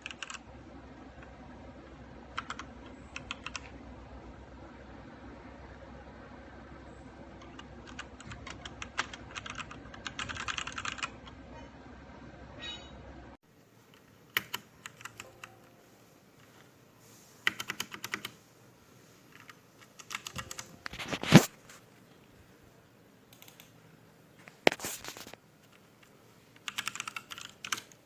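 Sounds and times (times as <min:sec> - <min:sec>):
mechanical keyboard typing: 0:00.0 - 0:00.4, 0:02.3 - 0:03.8, 0:07.4 - 0:11.4, 0:13.9 - 0:15.7, 0:17.4 - 0:18.4, 0:19.3 - 0:21.4, 0:23.3 - 0:23.8, 0:25.7 - 0:28.0.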